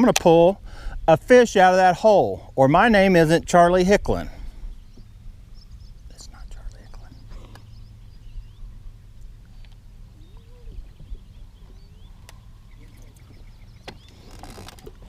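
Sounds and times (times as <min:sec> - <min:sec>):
steady low hum: 0:00.0 - 0:14.5
bird chirps and calls: 0:04.6 - 0:14.4.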